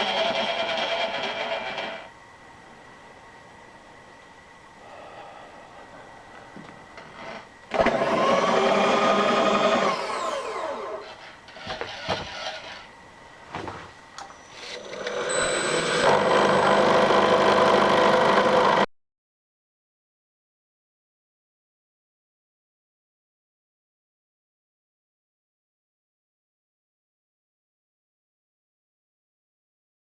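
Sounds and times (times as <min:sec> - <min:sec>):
electric motor running: 0:07.1 - 0:12.9, 0:14.6 - 0:18.9.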